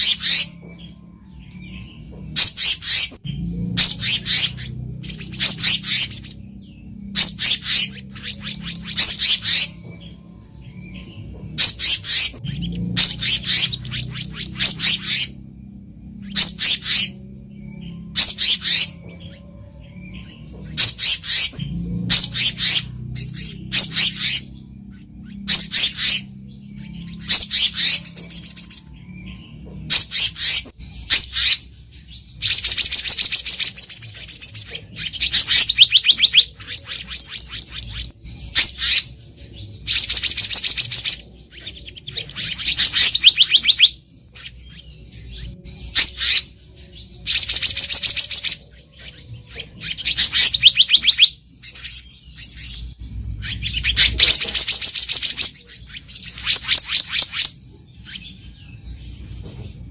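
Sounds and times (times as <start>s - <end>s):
bird calling sharp high notes: 32.5s - 39.2s.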